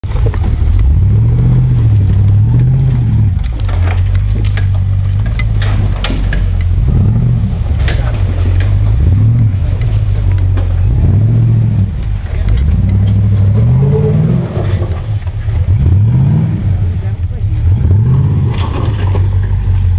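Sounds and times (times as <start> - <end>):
vehicle engine revving: 0.0 - 19.9
sharp clicks and knocks: 2.0 - 10.9, 11.9 - 13.6.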